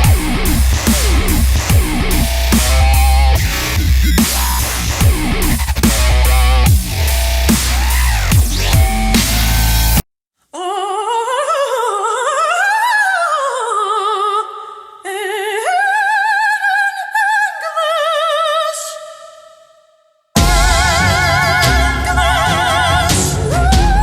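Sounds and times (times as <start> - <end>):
operatic voice singing with vibrato: 10.6 - 19.8, 20.4 - 24.0.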